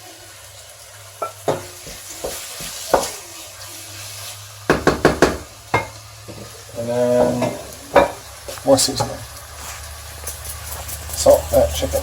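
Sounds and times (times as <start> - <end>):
chicken sizzling in frying pan: 0.0 - 12.0
utensil knocking against pan: 4.7 - 6.4.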